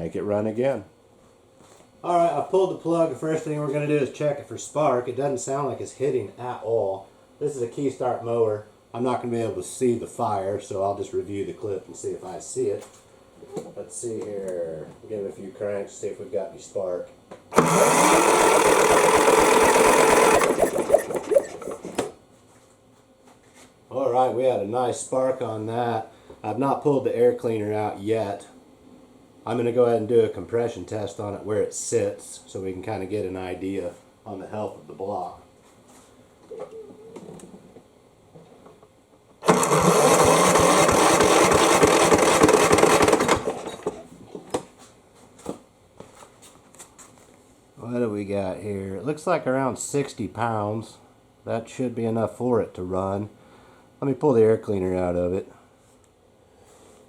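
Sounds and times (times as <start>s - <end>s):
electric starter cranking engine: 17.5s - 22.1s, 39.4s - 44.1s.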